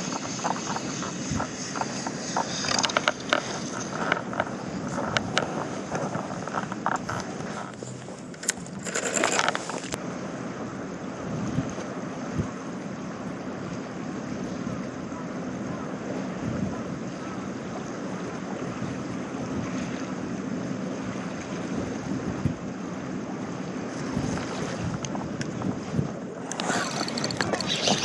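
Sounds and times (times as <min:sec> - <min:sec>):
wind buffeting microphone: 0:00.0 - 0:08.4, 0:16.4 - 0:17.1, 0:21.7 - 0:22.7, 0:24.0 - 0:28.0
sea waves: 0:00.0 - 0:11.3, 0:22.8 - 0:28.0
steady low hum: 0:00.0 - 0:28.0.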